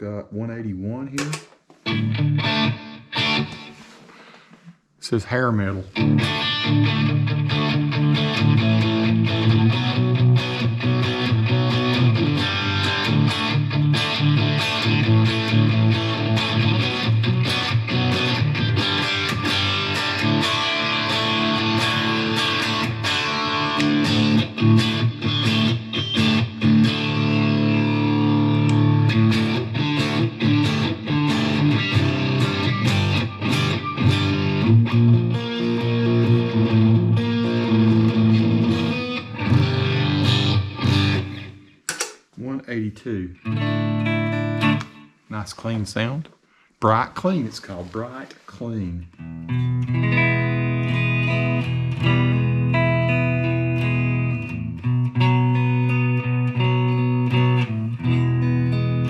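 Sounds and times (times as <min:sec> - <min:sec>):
distorted electric guitar: 0:01.2 - 0:04.0, 0:05.8 - 0:42.2, 0:43.4 - 0:45.3, 0:49.1 - 0:59.0.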